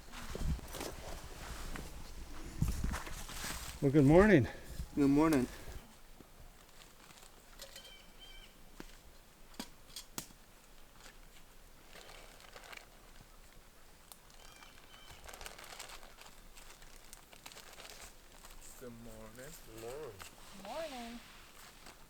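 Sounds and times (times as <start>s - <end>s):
faint rustling: 0.0s - 6.0s, 11.9s - 22.0s.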